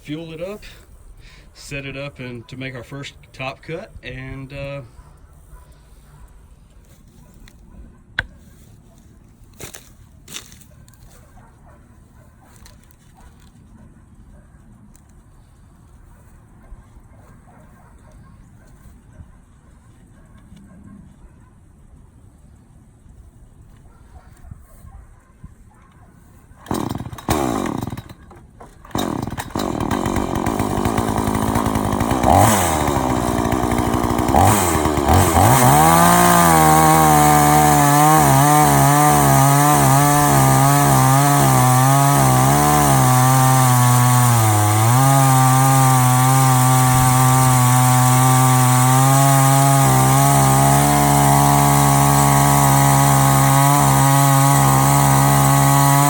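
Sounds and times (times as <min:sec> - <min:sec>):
chainsaw engine revving: 0:26.6 - 0:56.0
chainsaw pull cord: 0:26.6 - 0:56.0.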